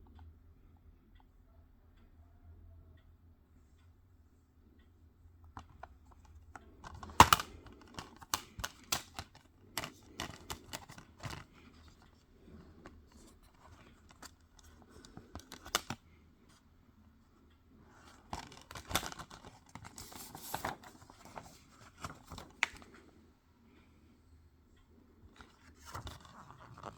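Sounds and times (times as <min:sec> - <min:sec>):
plastic cases clicking: 0:05.5 - 0:16.0, 0:18.0 - 0:23.0
packaging rustling: 0:12.9 - 0:16.0, 0:18.0 - 0:22.9.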